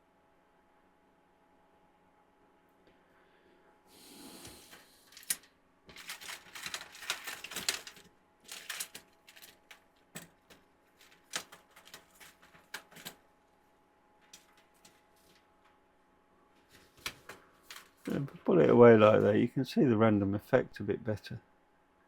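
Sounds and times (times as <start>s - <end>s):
plastic light strands rustling: 4.4s - 13.3s, 14.2s - 15.8s, 16.6s - 19.3s.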